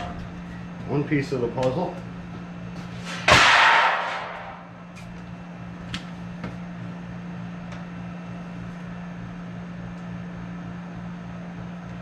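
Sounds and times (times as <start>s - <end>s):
sheet metal crashing: 3.1s - 4.7s.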